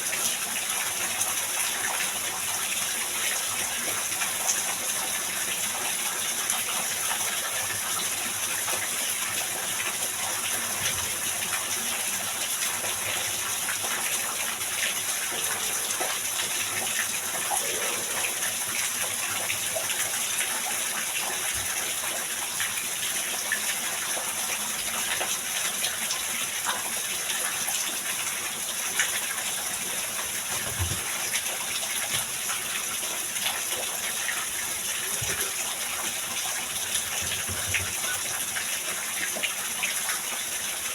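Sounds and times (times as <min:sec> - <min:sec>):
heavy rain pouring: 0:14.6 - 0:20.5.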